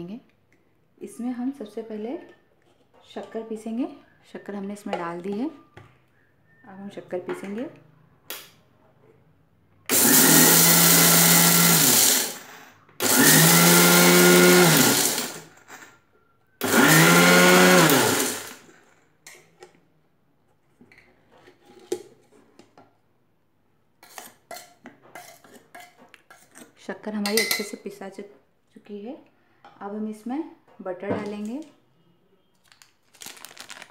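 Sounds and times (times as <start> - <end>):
mixer grinder motor grinding: 9.9 - 15.9, 16.6 - 18.8.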